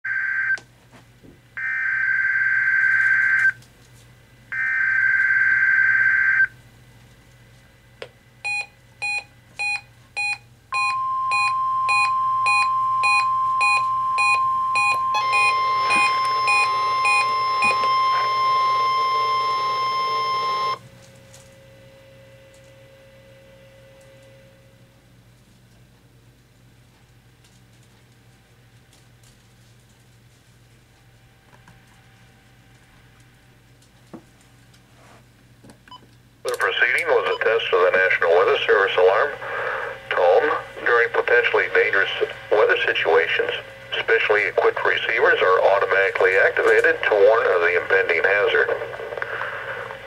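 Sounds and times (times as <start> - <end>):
quick beeps: 8.5 - 20.8
steady alert tone: 10.8 - 20.8
harsh buzzing: 11.0 - 20.8.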